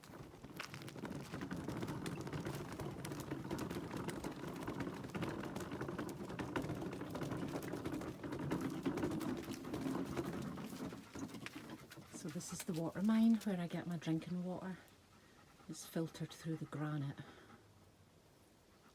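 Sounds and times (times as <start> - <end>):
hand trolley rattling: 0.0 - 13.5.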